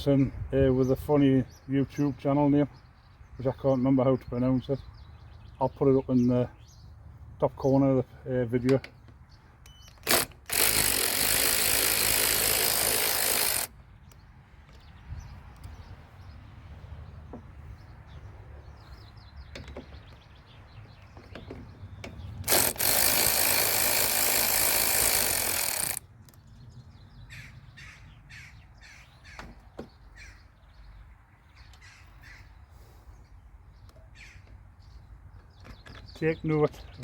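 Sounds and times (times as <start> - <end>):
birds calling: 0.0 - 37.0
clicks and knocks on mower: 19.5 - 20.3, 21.0 - 22.6.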